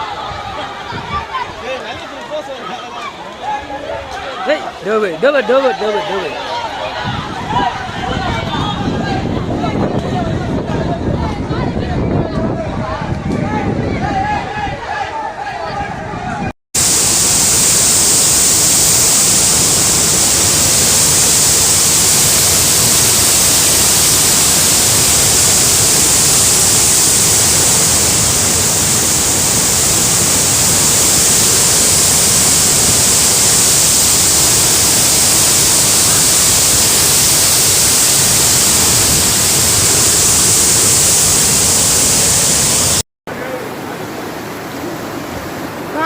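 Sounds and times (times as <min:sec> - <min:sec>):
fast-flowing floodwater rushing: 0:16.8 - 0:46.0.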